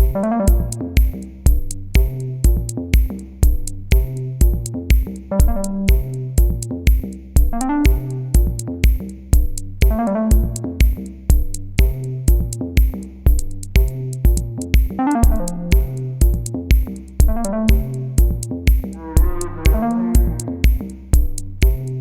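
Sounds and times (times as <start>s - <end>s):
synthesizer chords: 0.0s - 1.4s, 5.3s - 6.6s, 7.5s - 8.7s, 9.8s - 11.0s, 15.0s - 16.5s, 17.2s - 21.0s
drum machine beat: 0.0s - 22.0s.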